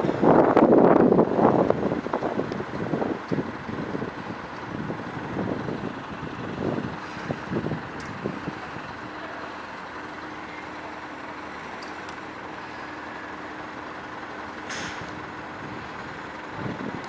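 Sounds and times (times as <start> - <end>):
fire engine idling: 0.0 - 17.0
air hiss: 14.7 - 15.3.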